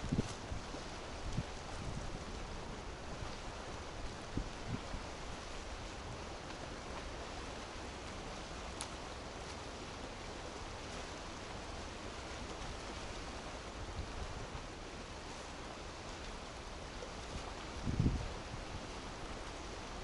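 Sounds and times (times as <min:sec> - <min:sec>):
wind buffeting microphone: 0:00.0 - 0:06.2, 0:17.4 - 0:19.7.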